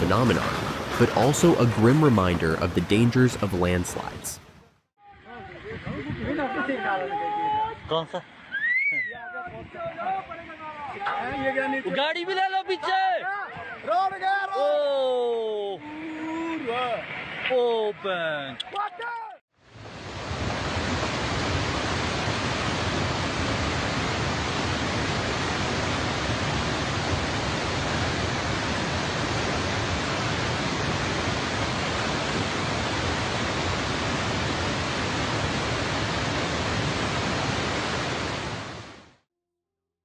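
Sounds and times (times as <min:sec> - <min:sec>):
steady rushing noise: 0:00.0 - 0:04.2.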